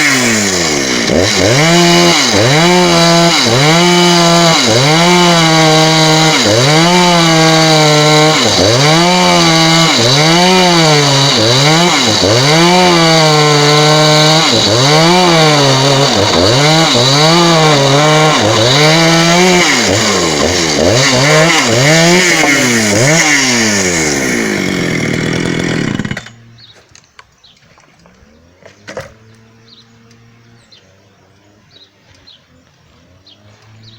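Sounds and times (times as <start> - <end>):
chainsaw cutting hard wood: 0.0 - 26.7, 28.6 - 30.7.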